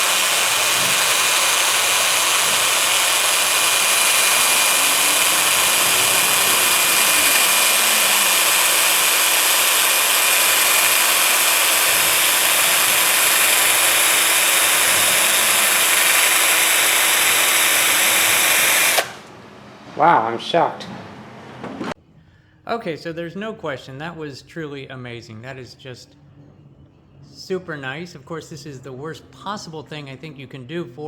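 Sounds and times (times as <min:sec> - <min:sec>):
sanding disc rasping on metal: 0:00.0 - 0:19.1
electric drill motor whine: 0:00.0 - 0:19.4.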